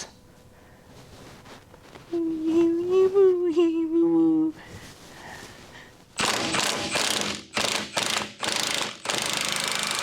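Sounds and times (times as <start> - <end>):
power tool ratcheting and whirring: 6.2 - 10.0.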